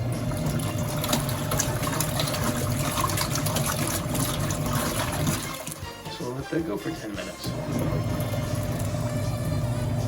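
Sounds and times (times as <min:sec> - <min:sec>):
low motor hum: 0:00.0 - 0:05.4, 0:07.5 - 0:10.0
washing machine water churning: 0:00.0 - 0:10.0.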